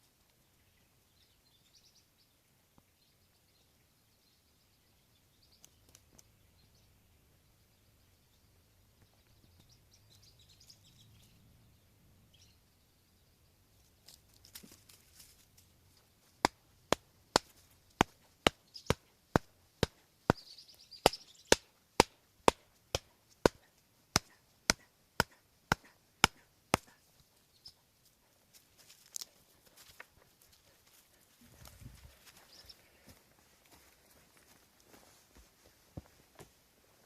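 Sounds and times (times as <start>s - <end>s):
faint bird chirps: 0.0s - 13.9s, 18.6s - 19.2s, 20.4s - 21.5s, 26.9s - 28.4s, 30.6s - 33.2s.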